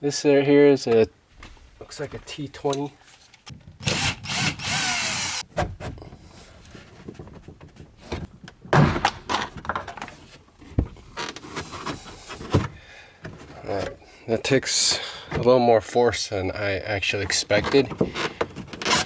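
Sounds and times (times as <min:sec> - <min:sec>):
screw being unscrewed: 0:03.4 - 0:05.4.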